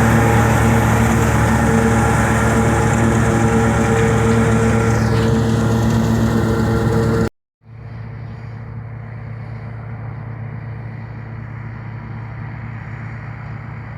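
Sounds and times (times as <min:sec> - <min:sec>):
tractor driving straw chopper: 0:00.0 - 0:07.3
quiet steady engine hum: 0:00.0 - 0:13.9.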